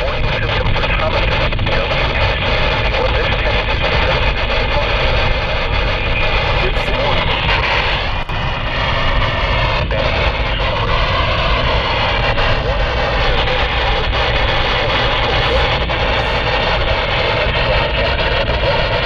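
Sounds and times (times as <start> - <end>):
radio static hiss: 5.8 - 8.4, 12.6 - 19.0
faint broken voice: 6.4 - 8.4, 13.4 - 19.0.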